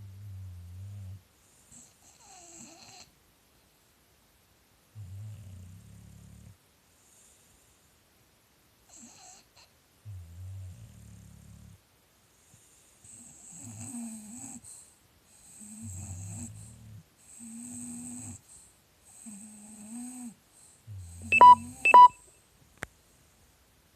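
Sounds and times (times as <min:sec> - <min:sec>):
dogs snoring: 0:00.0 - 0:03.1, 0:04.9 - 0:07.5, 0:08.9 - 0:11.8, 0:12.4 - 0:22.1.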